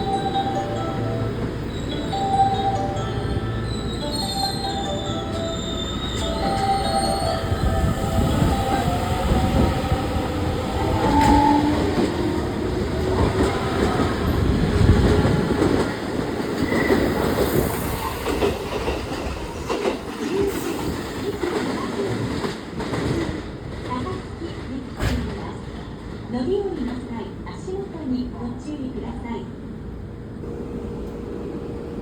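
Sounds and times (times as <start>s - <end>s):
electric train rumbling: 0.0s - 32.0s.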